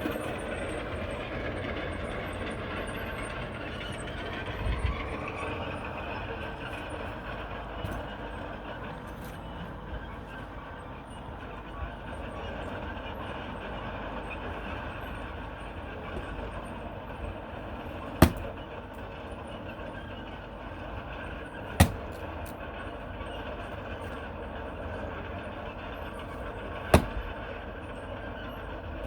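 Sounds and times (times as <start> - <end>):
axe splitting firewood: 17.2 - 19.0, 20.7 - 22.7, 25.8 - 27.8.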